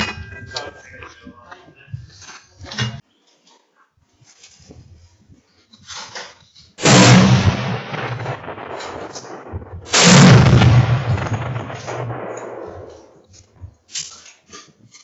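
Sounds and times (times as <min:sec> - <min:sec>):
rifle shots echoing: 0:06.8 - 0:13.3.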